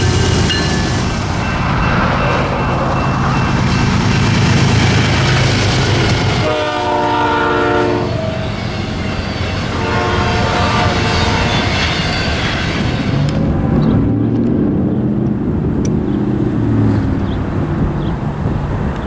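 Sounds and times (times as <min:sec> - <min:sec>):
diesel locomotive rumble: 0:00.0 - 0:19.0
train air horn chord: 0:06.4 - 0:08.4, 0:09.7 - 0:11.6.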